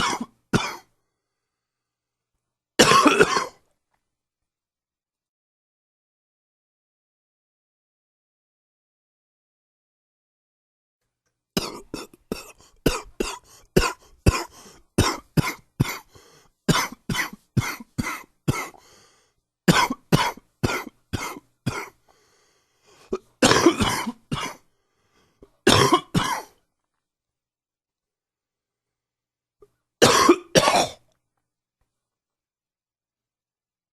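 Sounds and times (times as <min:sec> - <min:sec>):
man coughing: 0:00.0 - 0:00.9, 0:02.8 - 0:03.6, 0:11.6 - 0:18.8, 0:19.7 - 0:22.0, 0:23.1 - 0:24.6, 0:25.6 - 0:26.6, 0:30.0 - 0:31.0.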